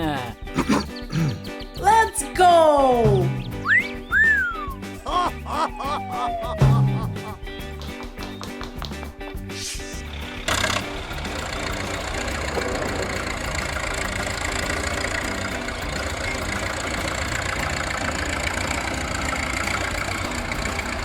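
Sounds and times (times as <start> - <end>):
heavy vehicle engine rumbling: 10.1 - 21.0.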